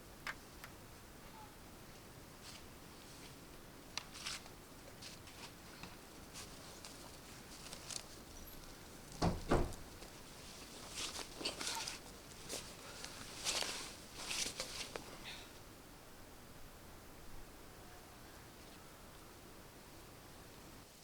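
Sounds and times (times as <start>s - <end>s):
light clicks and rustles: 2.4s - 15.5s
heavy thuds: 9.2s - 10.0s.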